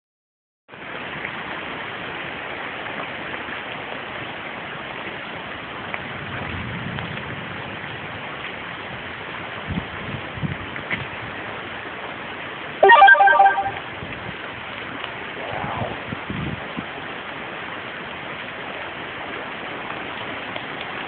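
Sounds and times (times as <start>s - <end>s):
hiss of hail and rain: 0.7s - 12.8s, 14.1s - 21.0s.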